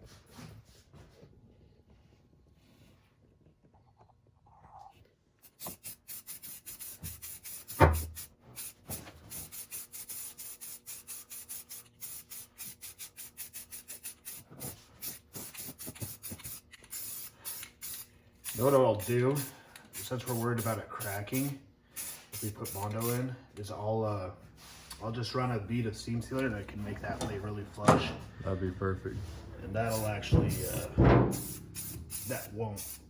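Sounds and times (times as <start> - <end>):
thump: 30.4 - 31.4.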